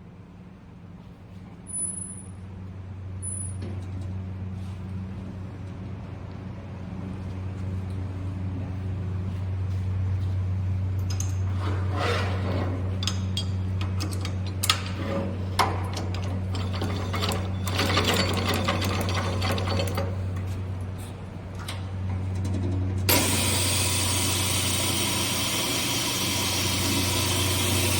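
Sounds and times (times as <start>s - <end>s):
band saw motor humming: 23.1s - 27.9s.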